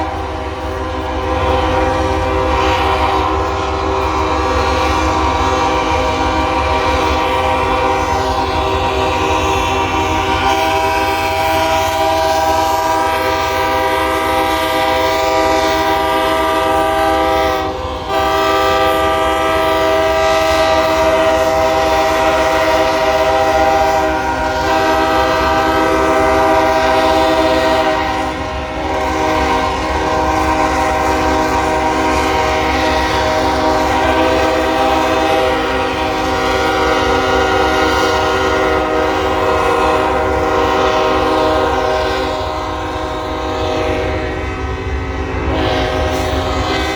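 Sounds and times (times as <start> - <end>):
locomotive air horns: 0.0 - 46.9.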